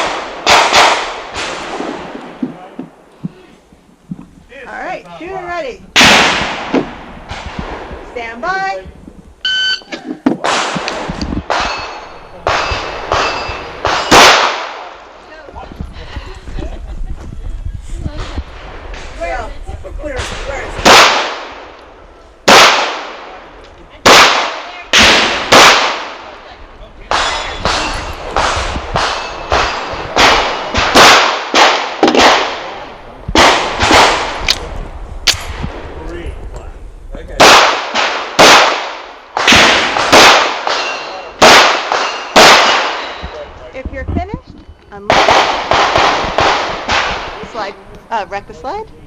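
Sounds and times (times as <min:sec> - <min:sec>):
pistol shots echoing: 0:00.0 - 0:02.4, 0:10.4 - 0:15.1, 0:20.8 - 0:21.8, 0:22.4 - 0:23.4, 0:24.0 - 0:26.3, 0:27.1 - 0:32.8, 0:33.4 - 0:34.6, 0:37.4 - 0:43.4, 0:45.1 - 0:47.4
shot timer beep: 0:09.4 - 0:10.0.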